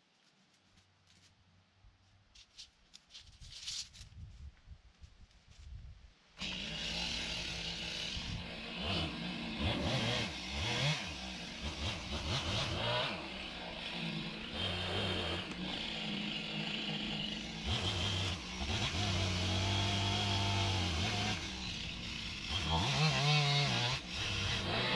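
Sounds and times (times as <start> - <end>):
small engine revving: 6.4 - 24.9.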